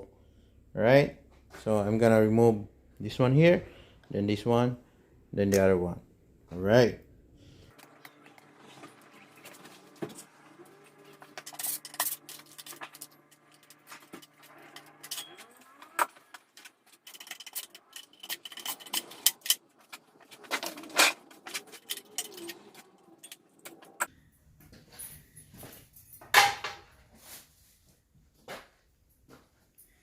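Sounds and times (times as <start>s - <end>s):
metal tools clicking and clinking: 11.3s - 24.1s.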